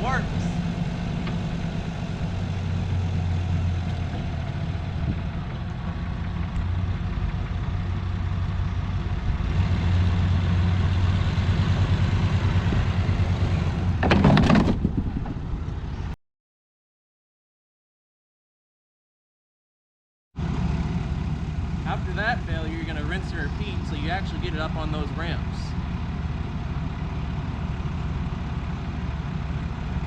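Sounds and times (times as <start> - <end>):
car engine running at low speed: 0.0 - 16.2, 20.4 - 30.0
loud clatter: 14.0 - 15.4.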